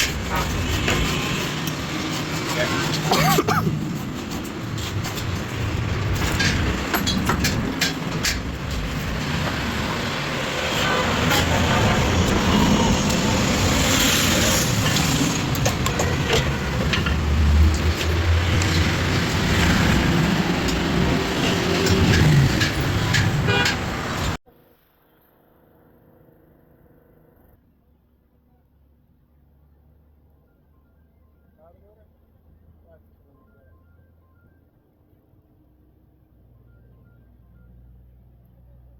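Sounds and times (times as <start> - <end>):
road traffic rumble: 0.0 - 24.4
sharp clicks and knocks: 3.8 - 12.0, 14.8 - 24.4.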